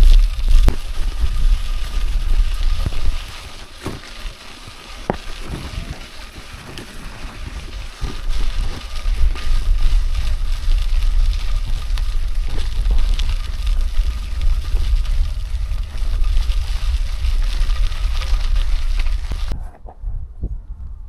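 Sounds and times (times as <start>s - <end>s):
wind buffeting microphone: 5.0s - 21.0s.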